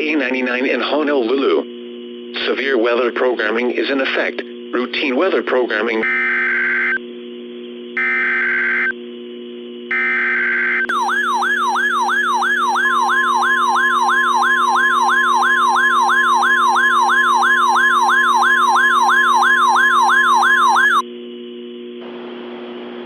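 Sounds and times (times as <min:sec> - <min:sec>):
low steady hum: 0:00.0 - 0:23.0
electronic siren sweeping down: 0:06.0 - 0:07.0, 0:08.0 - 0:09.0, 0:09.9 - 0:21.1
steady alert tone: 0:10.9 - 0:21.0.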